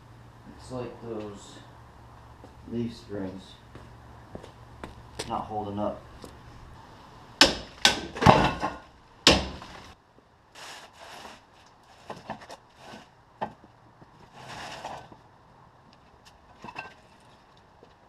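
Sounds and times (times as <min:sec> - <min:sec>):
soft scrapes: 0:14.2 - 0:15.1.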